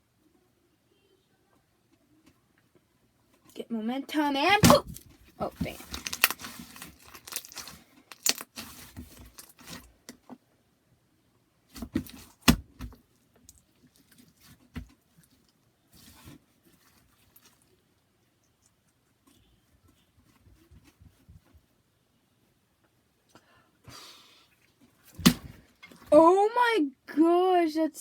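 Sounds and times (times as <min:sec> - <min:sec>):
slime squelching and clicking: 0:05.6 - 0:09.7.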